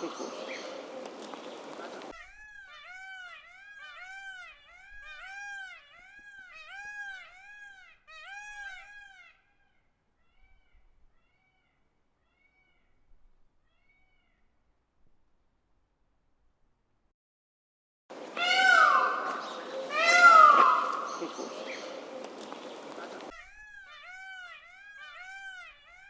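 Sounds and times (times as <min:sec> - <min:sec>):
peacock calling: 0:00.0 - 0:09.3, 0:18.1 - 0:26.0.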